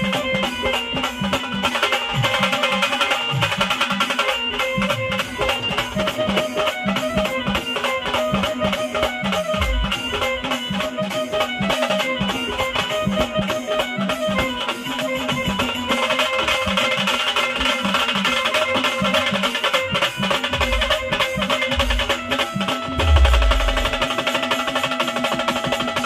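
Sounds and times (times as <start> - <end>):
drums beating quick rhythm: 0.0 - 26.0
sustained melody line: 4.4 - 14.4, 20.0 - 24.3.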